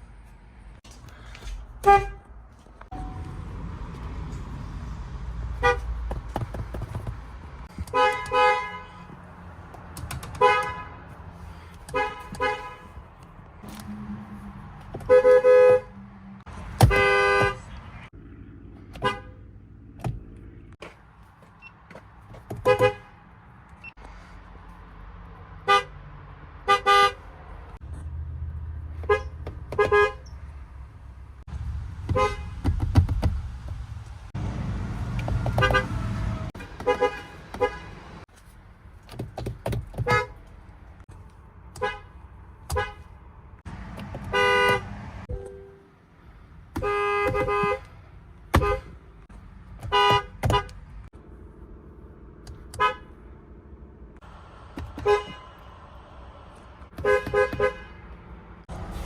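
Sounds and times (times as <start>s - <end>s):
engine and traffic rumble: 0.0s - 59.0s
vehicle horns honking: 1.8s - 2.3s, 5.6s - 6.0s, 7.7s - 9.2s, 10.3s - 13.0s, 13.7s - 16.2s, 16.8s - 18.0s, 19.0s - 19.4s, 22.6s - 23.2s, 25.6s - 26.0s, 26.6s - 27.2s, 29.0s - 30.3s, 32.1s - 32.6s, 35.5s - 38.2s, 41.8s - 43.1s, 44.2s - 45.9s, 46.8s - 47.9s, 48.5s - 49.0s, 49.8s - 50.8s, 52.8s - 53.2s, 54.8s - 55.6s, 56.9s - 58.1s.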